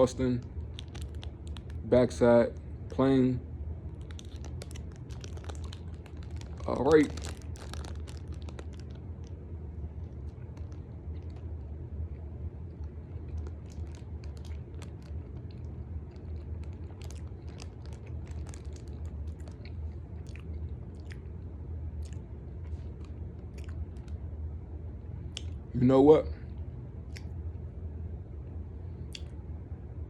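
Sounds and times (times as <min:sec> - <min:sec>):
low hum: 0:00.0 - 0:30.0
person chewing: 0:00.6 - 0:01.8, 0:03.9 - 0:09.4, 0:10.0 - 0:24.1
wet mouth clicks and smacks: 0:27.1 - 0:27.3, 0:29.1 - 0:29.4.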